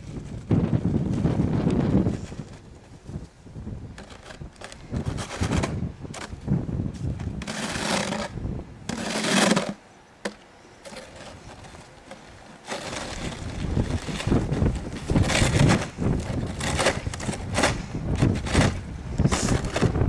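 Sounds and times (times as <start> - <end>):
shovel scraping snow: 4.0 - 6.4, 7.0 - 9.8, 10.8 - 20.0.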